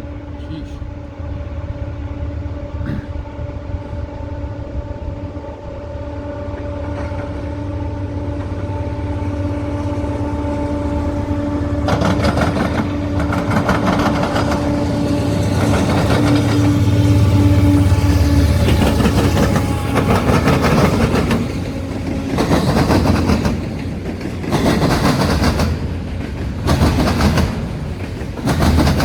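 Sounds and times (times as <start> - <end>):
train engine rumble: 0.0 - 29.0
train wheels clattering over rail joints: 11.2 - 29.0.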